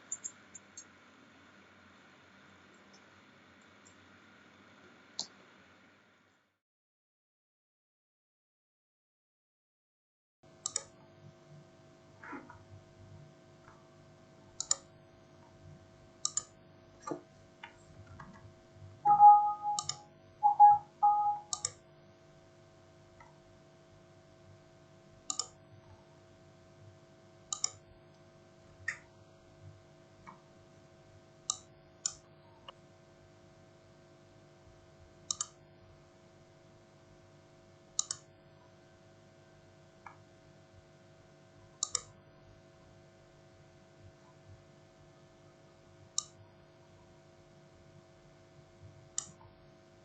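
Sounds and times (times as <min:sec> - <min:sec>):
computer mouse clicks: 0:00.1 - 0:00.9, 0:10.6 - 0:10.9, 0:14.6 - 0:14.9, 0:16.2 - 0:18.4, 0:19.1 - 0:21.8, 0:25.3 - 0:25.6, 0:27.5 - 0:27.8, 0:31.5 - 0:32.8, 0:35.3 - 0:35.6, 0:38.0 - 0:38.3, 0:41.8 - 0:42.2, 0:46.1 - 0:46.4, 0:49.2 - 0:49.5
faint steady hum: 0:10.5 - 0:50.0.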